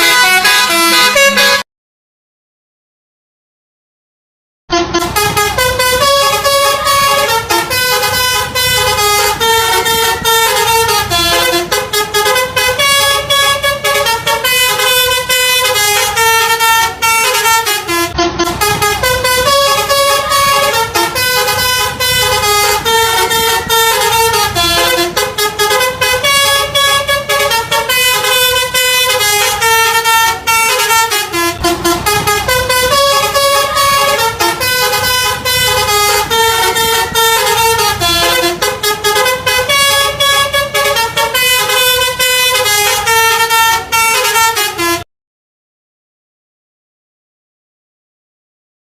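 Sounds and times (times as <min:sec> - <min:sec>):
multi-tone bus air horn melody: 0:00.0 - 0:01.7, 0:04.7 - 0:45.1.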